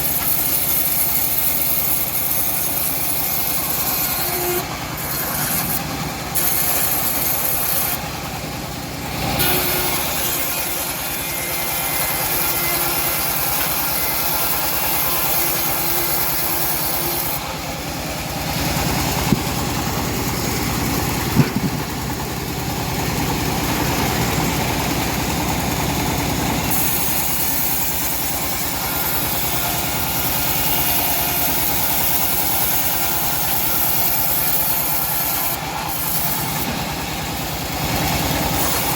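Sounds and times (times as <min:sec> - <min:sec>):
bandsaw sawing through log: 0:00.0 - 0:22.6, 0:23.2 - 0:38.9
short knocks: 0:21.3 - 0:22.0.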